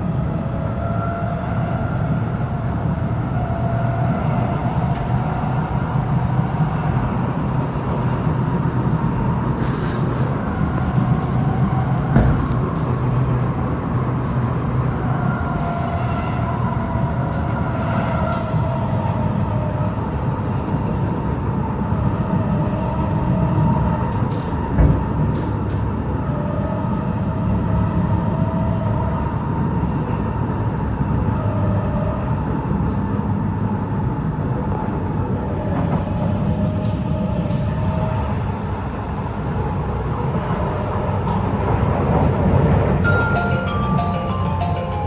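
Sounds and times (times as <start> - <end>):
metro wheels rumbling on track: 0.0 - 45.0
higher tones: 43.0 - 45.0.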